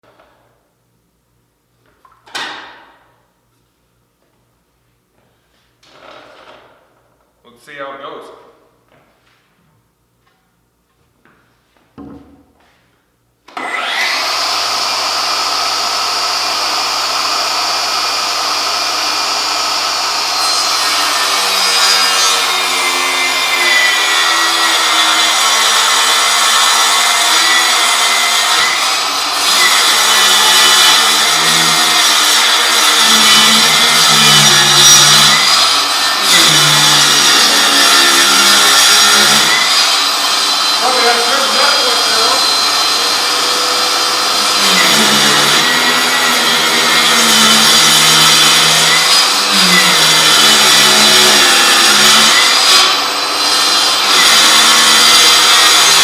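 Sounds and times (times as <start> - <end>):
table saw cutting wood: 13.5 - 56.0
table saw whining: 13.5 - 56.0.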